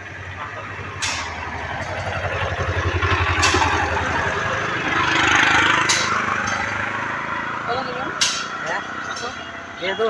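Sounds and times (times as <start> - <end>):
vehicle engine running: 0.0 - 9.8
road noise: 0.0 - 10.0
sharp knocks: 1.0 - 7.2, 8.2 - 9.5.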